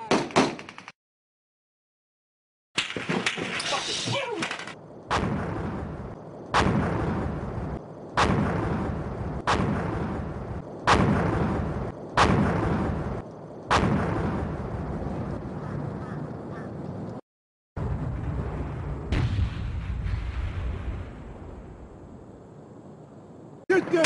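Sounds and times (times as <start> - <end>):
heavy gunshot-like booms: 5.1 - 7.6, 8.2 - 14.8, 17.8 - 21.9.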